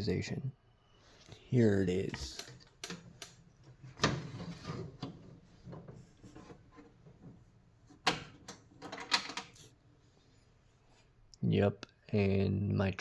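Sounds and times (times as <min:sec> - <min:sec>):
drawer scraping and rattling: 0:03.8 - 0:09.6.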